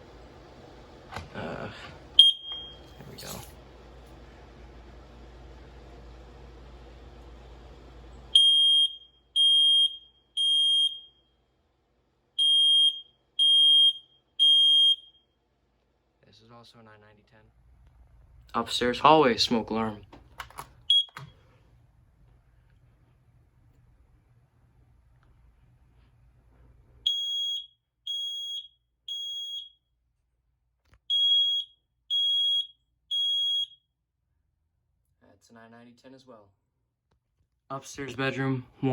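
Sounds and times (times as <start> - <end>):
smoke alarm beeping: 2.2 - 3.0, 8.3 - 11.4, 12.4 - 15.4, 20.8 - 21.4, 27.0 - 29.9, 31.1 - 33.9.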